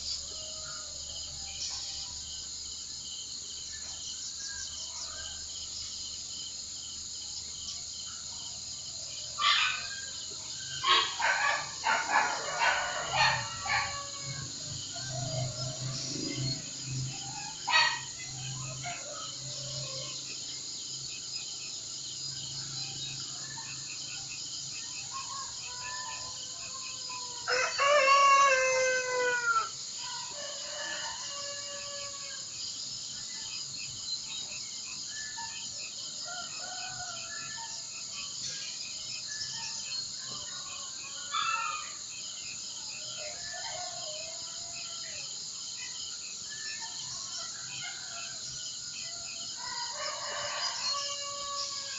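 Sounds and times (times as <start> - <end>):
pulsing insect chorus: 0.0 - 51.9
rooster crowing: 10.8 - 18.1, 26.0 - 32.5, 36.2 - 37.8, 49.3 - 51.9.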